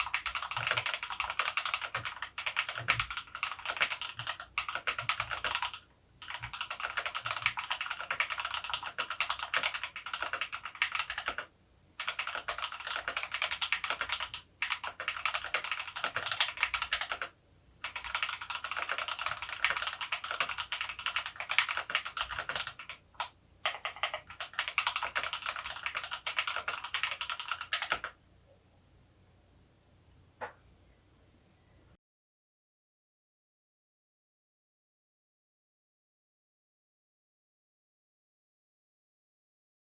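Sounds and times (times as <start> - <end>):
mechanical keyboard typing: 0.0 - 28.2.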